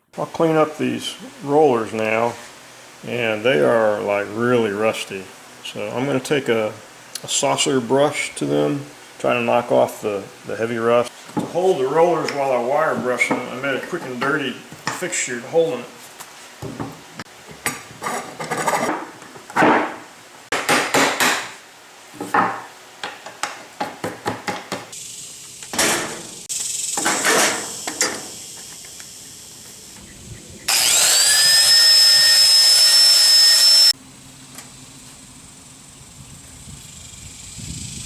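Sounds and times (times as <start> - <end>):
angle grinder whining: 30.7 - 34.0.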